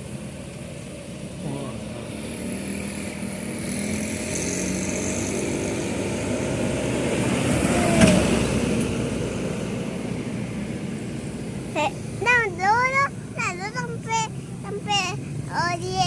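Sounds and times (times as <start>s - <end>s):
vehicle driving past: 1.4s - 11.6s.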